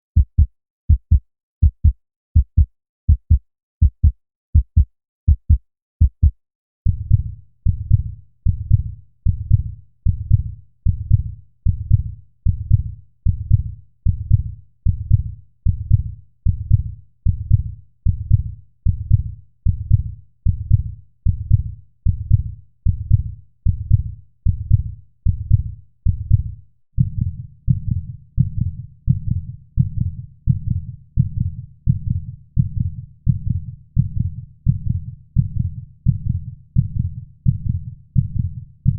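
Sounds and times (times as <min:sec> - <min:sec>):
heartbeat thumps: 0:00.2 - 0:26.5.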